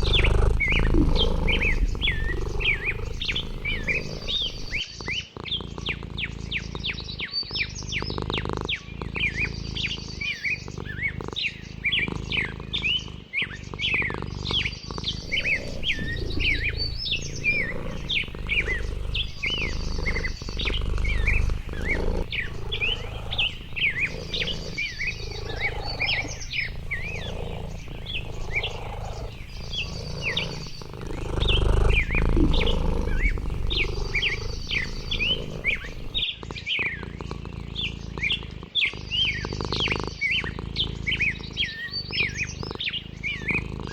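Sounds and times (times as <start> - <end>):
high bird trill: 0.0 - 4.9, 9.2 - 36.9
birds chirping: 0.0 - 43.9.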